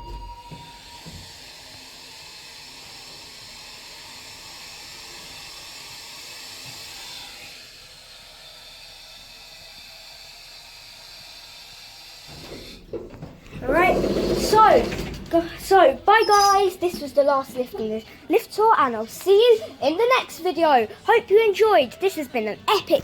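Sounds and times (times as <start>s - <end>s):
lift car rushing hiss: 0.4s - 17.4s.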